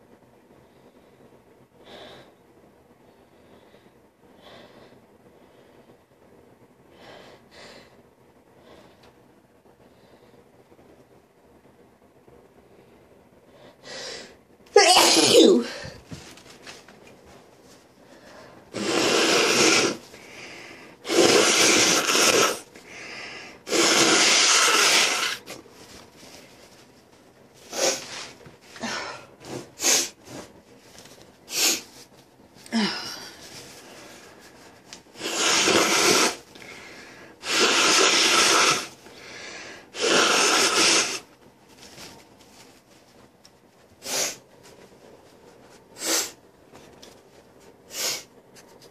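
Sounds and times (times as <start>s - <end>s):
person blowing nose: 18.7s - 20.1s, 21.0s - 22.7s, 23.6s - 25.6s, 27.6s - 28.3s, 29.5s - 30.4s, 31.5s - 31.9s, 35.1s - 36.5s, 37.4s - 39.0s, 39.9s - 41.3s, 44.0s - 44.4s, 46.0s - 46.4s, 47.9s - 48.3s
person sniffing: 18.7s - 25.5s, 27.6s - 28.4s, 29.6s - 30.3s, 31.5s - 31.9s, 35.1s - 41.3s, 44.0s - 44.4s, 46.0s - 46.4s, 47.9s - 48.3s.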